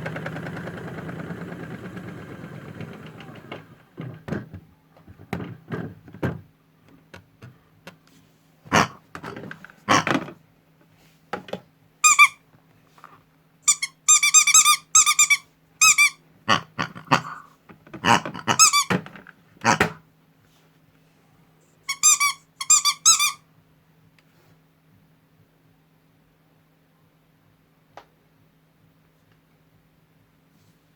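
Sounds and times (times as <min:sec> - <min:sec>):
small motor humming: 0:00.0 - 0:03.9.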